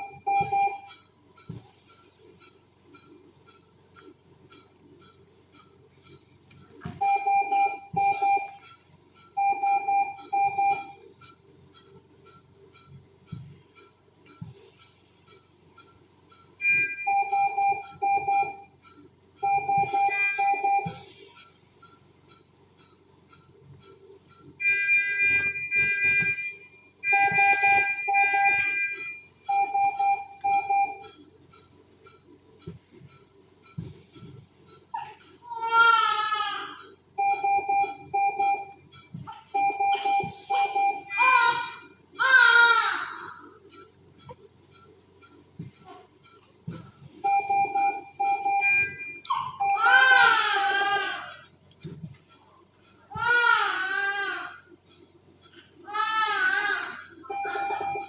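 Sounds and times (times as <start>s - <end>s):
monitor short beeps: 0.0s - 35.4s, 43.4s - 49.8s, 57.0s - 58.0s
medical monitor alarm beeping: 0.0s - 58.0s.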